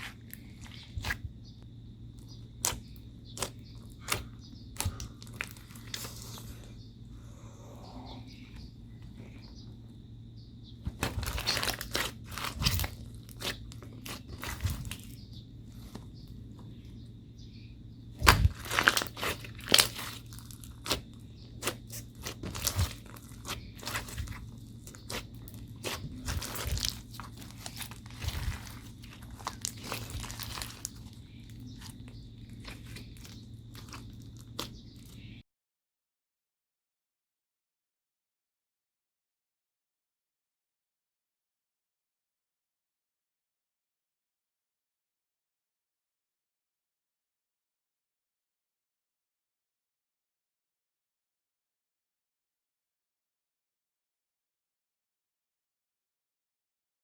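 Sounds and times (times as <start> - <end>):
slime crackling: 0.0 - 1.2, 2.6 - 6.5, 11.0 - 16.0, 18.2 - 35.2.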